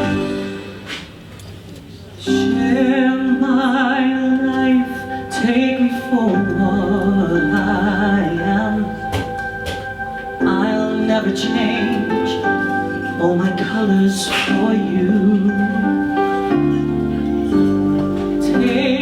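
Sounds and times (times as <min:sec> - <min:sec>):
instrumental backing: 0:00.0 - 0:19.0
man singing with vibrato: 0:02.2 - 0:09.4, 0:10.4 - 0:16.8, 0:18.4 - 0:19.0.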